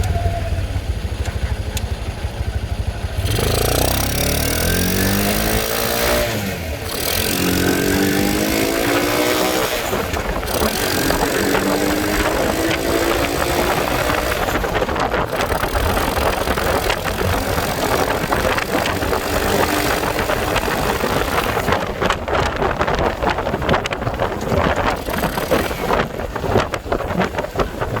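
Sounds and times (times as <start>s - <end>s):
motorcycle engine idling: 0.0s - 5.5s
wind buffeting microphone: 2.0s - 28.0s.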